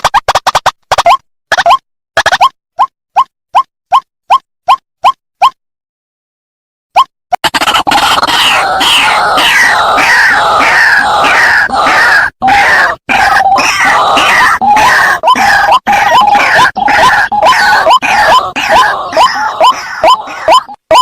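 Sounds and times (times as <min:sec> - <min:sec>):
waterhen calling: 0:11.7 - 0:20.8.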